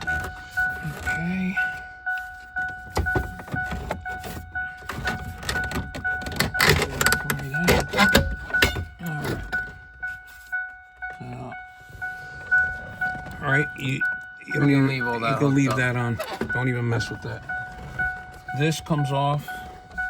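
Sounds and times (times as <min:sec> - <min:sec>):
car warning chime dinging: 0:00.0 - 0:20.0
plastic and metal parts clicking: 0:04.9 - 0:09.7.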